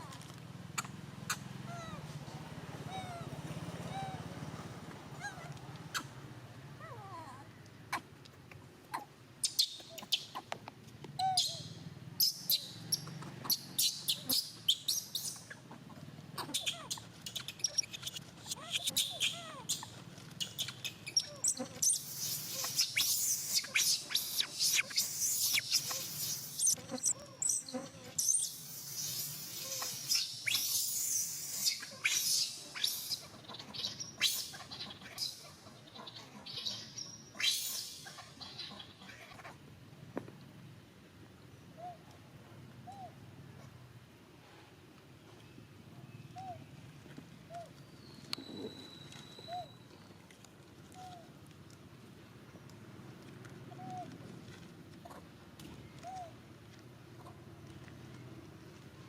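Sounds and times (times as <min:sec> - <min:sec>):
animal chirps and squeaks: 0:08.9 - 0:10.5, 0:11.2 - 0:15.8, 0:16.4 - 0:39.5, 0:47.5 - 0:49.9.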